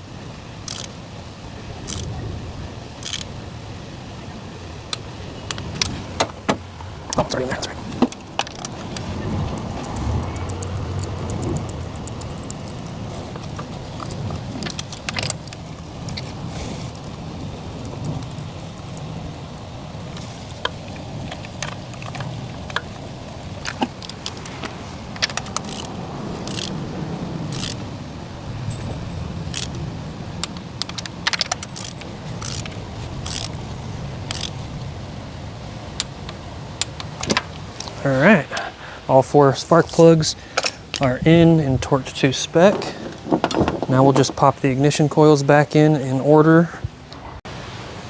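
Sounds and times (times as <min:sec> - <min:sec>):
metal hand tools clicking: 0:00.7 - 0:01.0, 0:01.8 - 0:02.1, 0:03.0 - 0:03.3, 0:08.0 - 0:16.4, 0:21.0 - 0:26.8, 0:27.5 - 0:27.9, 0:29.5 - 0:29.8, 0:30.4 - 0:33.6, 0:34.3 - 0:34.6, 0:36.0 - 0:38.7, 0:39.6 - 0:44.5.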